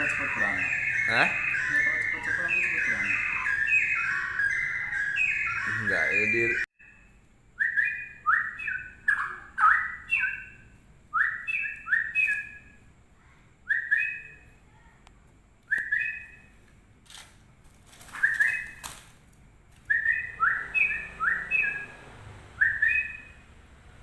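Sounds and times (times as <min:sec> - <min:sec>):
bird singing whistled notes: 0:00.0 - 0:12.8, 0:13.7 - 0:14.4, 0:15.7 - 0:16.5, 0:18.1 - 0:18.8, 0:19.9 - 0:23.4.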